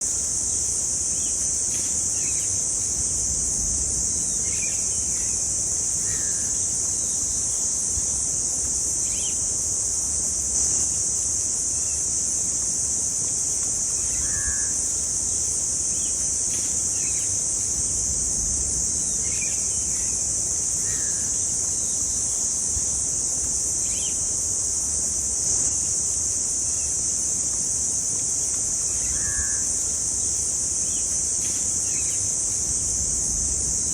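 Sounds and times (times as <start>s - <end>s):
high-pitched insect drone: 13.2s - 33.9s.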